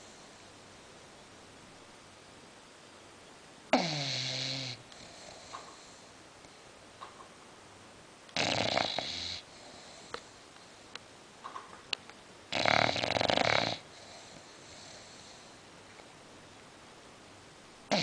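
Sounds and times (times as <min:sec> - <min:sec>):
dog snoring: 0:03.7 - 0:06.1, 0:08.4 - 0:10.4, 0:12.5 - 0:15.6.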